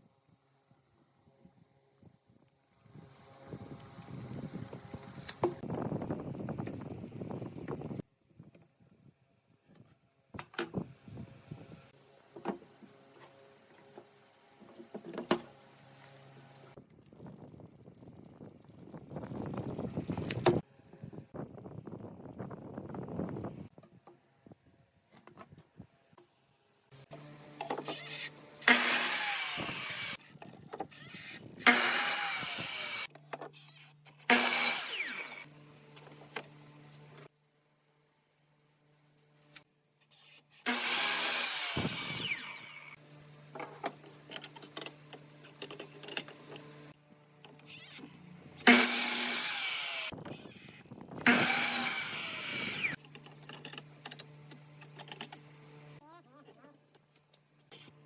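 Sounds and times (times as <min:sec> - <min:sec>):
power tool cutting wood: 0:27.0 - 0:30.2, 0:30.9 - 0:36.4, 0:40.2 - 0:56.0.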